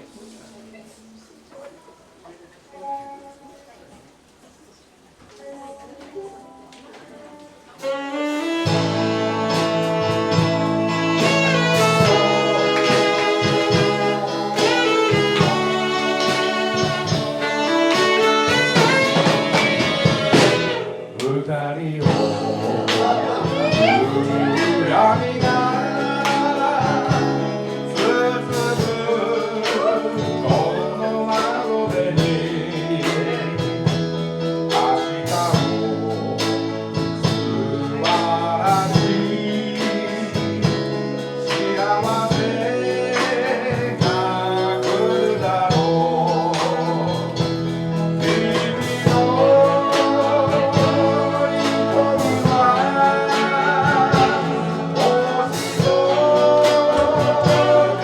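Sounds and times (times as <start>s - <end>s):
person singing: 5.3s - 58.0s
guitar chords: 6.2s - 58.0s
percussive beat: 8.7s - 21.4s.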